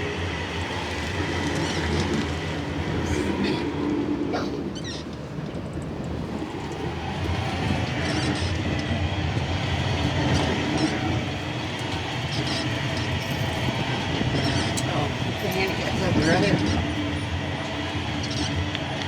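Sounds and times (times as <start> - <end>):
road and tyre rumble: 0.0 - 19.0.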